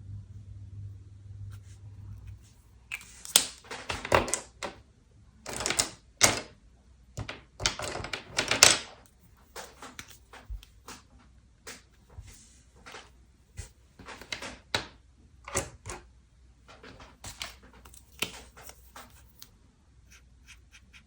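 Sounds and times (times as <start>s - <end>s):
pen scratching on paper: 20.1s - 21.0s.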